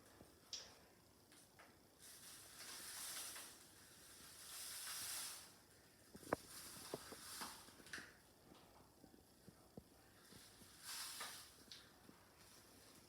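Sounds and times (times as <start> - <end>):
sand trickling into balloon: 2.0 - 7.8, 10.3 - 11.7.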